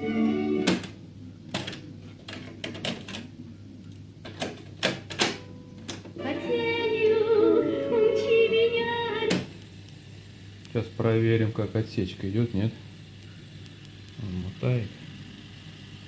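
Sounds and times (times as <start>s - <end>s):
music with singing from speaker: 6.2s - 9.5s.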